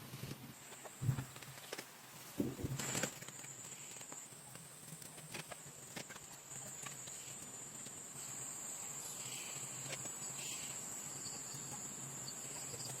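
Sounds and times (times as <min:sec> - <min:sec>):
high-pitched insect chorus: 0:06.9 - 0:13.0.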